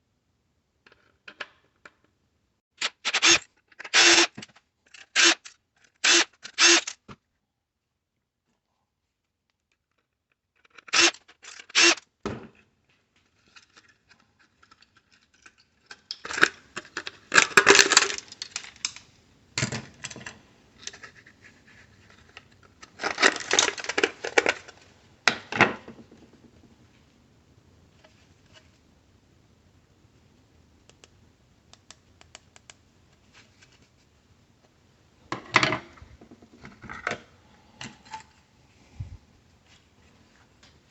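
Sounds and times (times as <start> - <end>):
parts clattering and rattling: 16.2 - 19.0, 22.9 - 26.7
faint handling noise: 30.9 - 40.9.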